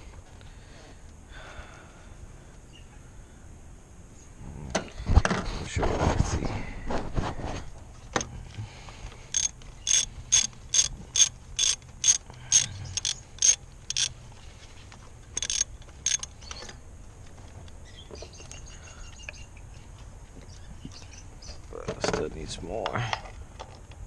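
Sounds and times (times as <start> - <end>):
ratchet wrench clicking: 9.3 - 14.1, 15.4 - 16.3.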